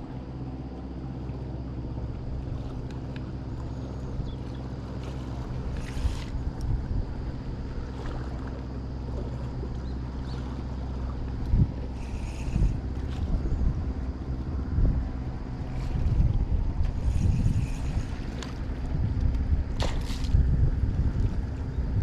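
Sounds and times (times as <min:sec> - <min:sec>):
boat engine running: 0:00.0 - 0:22.0
water noise: 0:00.0 - 0:22.0
wind: 0:00.0 - 0:22.0.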